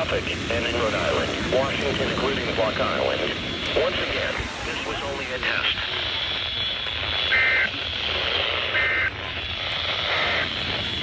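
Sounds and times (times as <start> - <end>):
radio reception hiss: 0.0 - 11.0
two-tone digital data squawks: 5.8 - 10.6.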